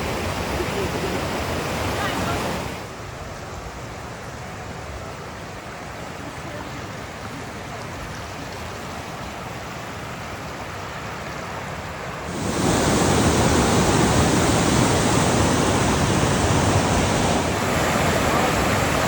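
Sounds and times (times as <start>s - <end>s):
waterfall rushing water: 0.0s - 19.0s.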